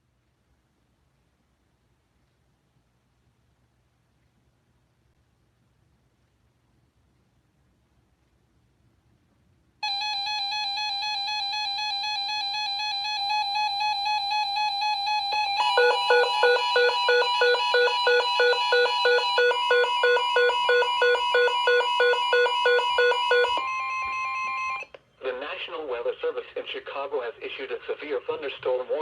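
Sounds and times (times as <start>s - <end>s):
rapid pulsing beep: 9.8s - 24.9s
steady higher tone: 9.8s - 24.9s.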